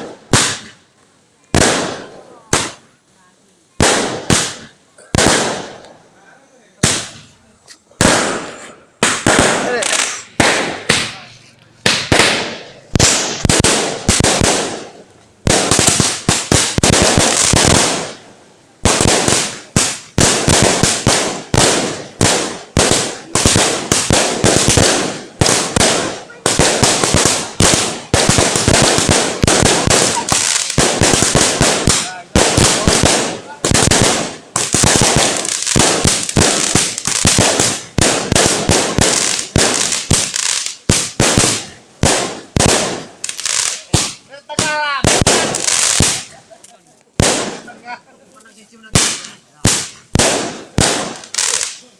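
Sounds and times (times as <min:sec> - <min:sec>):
fireworks bangs: 0:00.0 - 0:03.0, 0:03.7 - 0:06.1, 0:06.8 - 0:51.9
crackling hiss of fireworks: 0:00.0 - 0:51.9.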